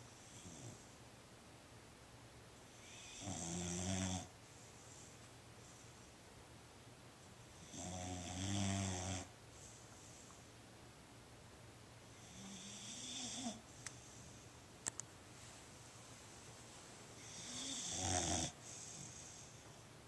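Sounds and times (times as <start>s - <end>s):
dog snoring: 0.2s - 0.9s, 2.7s - 4.3s, 7.6s - 10.2s, 12.1s - 14.2s, 17.2s - 19.7s.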